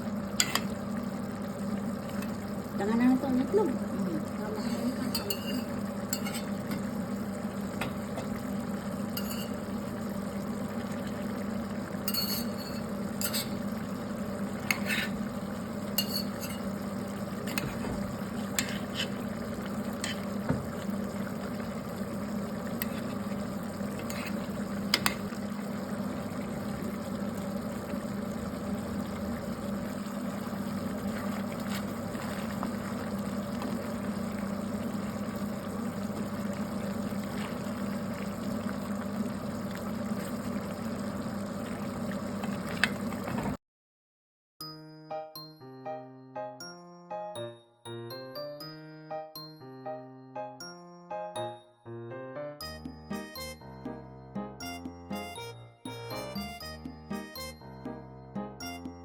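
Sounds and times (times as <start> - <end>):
utensil stirring food in pan: 0.4 - 0.8, 4.4 - 7.1, 7.8 - 10.0, 11.9 - 13.8, 14.4 - 38.8.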